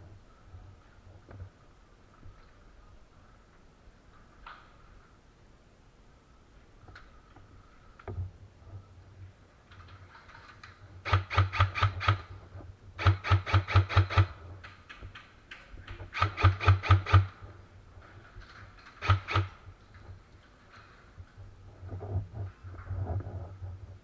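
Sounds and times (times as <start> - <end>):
airsoft gun shots: 11.1 - 12.2, 13.0 - 14.4, 16.2 - 17.3, 19.0 - 19.5.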